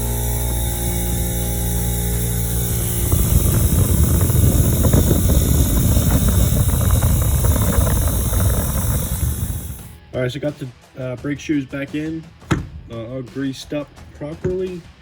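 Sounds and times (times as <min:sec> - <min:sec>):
wire wheel scrubbing metal: 0:00.0 - 0:10.0.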